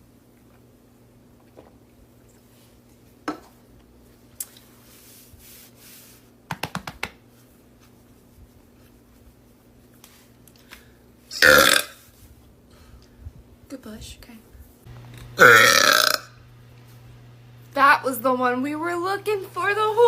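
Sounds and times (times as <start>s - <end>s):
loud belch: 11.4s - 12.0s, 15.4s - 16.4s.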